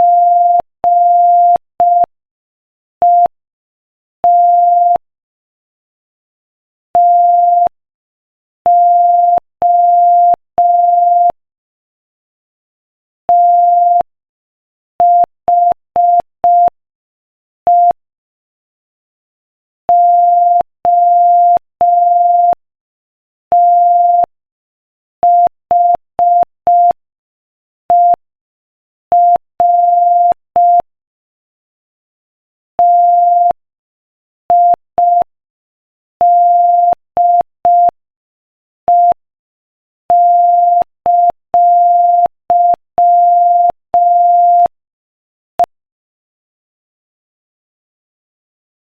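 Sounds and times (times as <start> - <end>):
morse code tone: 32.8 - 33.6, 36.2 - 38.0, 38.9 - 39.2, 40.1 - 44.8.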